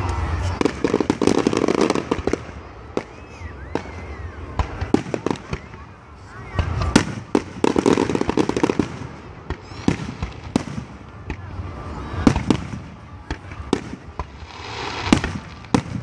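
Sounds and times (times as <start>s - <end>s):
rapid firework crackling: 0.0s - 16.0s.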